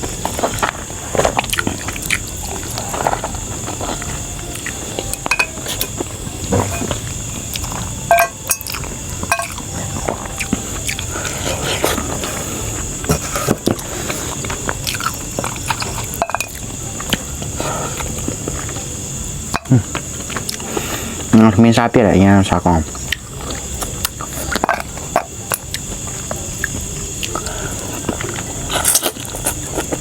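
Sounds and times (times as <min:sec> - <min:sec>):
utensils clinking on plates: 0:03.8 - 0:12.3, 0:13.1 - 0:18.7.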